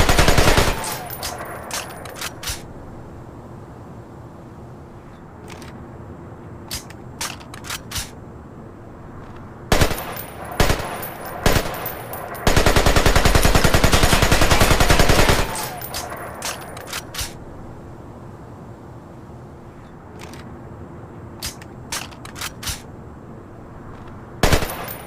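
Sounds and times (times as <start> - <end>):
rifle gunshots: 0.0 - 2.6, 9.7 - 17.4, 24.4 - 25.0
light gun clicks: 0.7 - 2.7, 5.4 - 5.8, 6.6 - 8.2, 15.4 - 17.4, 20.1 - 20.6, 21.4 - 22.9.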